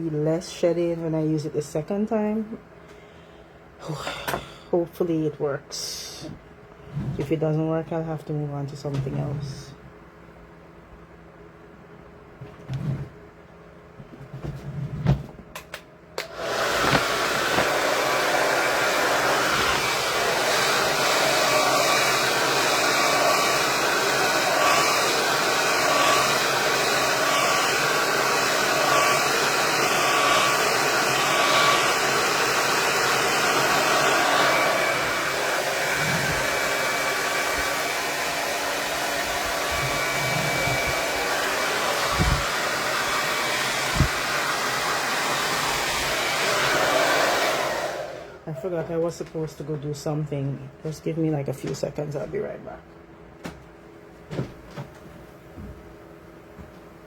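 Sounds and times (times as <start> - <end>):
hair dryer switch clicks: 15.6 - 17.8
hair dryer blowing: 16.2 - 48.7.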